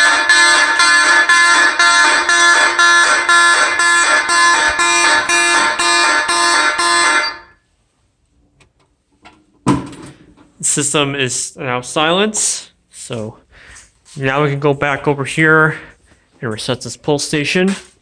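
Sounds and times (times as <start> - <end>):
fire alarm horns buzzing pulses: 0.0 - 7.6.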